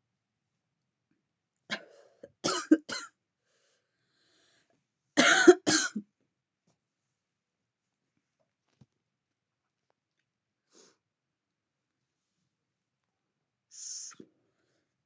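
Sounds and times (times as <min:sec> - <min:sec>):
woman coughing: 0:01.7 - 0:03.1, 0:05.2 - 0:06.0.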